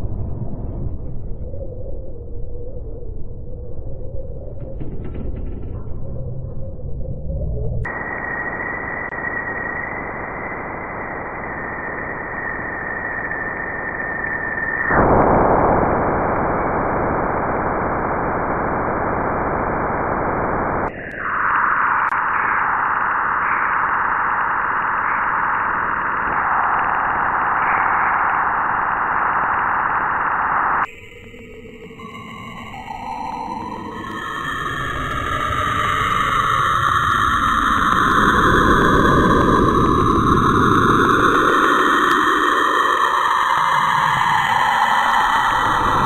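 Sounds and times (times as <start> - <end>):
steady high tone: 5.8 - 46.0
static-like hiss: 15.4 - 30.9.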